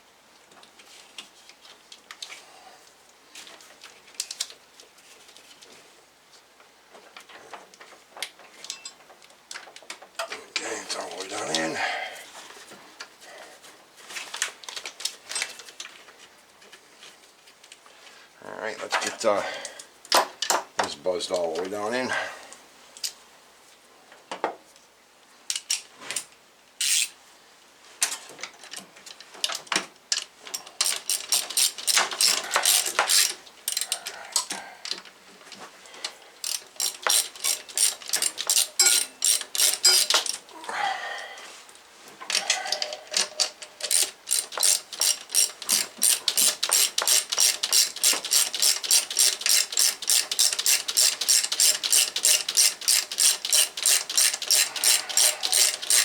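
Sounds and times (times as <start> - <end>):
ratchet wrench clicking: 26.8 - 27.1, 30.8 - 34.5, 36.4 - 40.4, 43.5 - 56.0.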